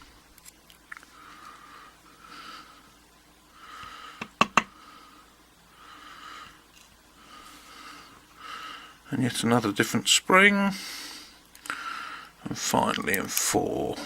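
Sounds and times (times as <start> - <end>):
soft breathing through nose: 1.0 - 9.1, 10.7 - 12.4.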